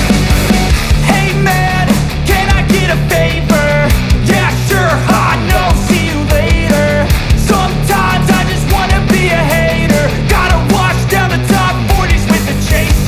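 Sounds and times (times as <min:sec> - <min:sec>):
rock music: 0:00.0 - 0:13.0.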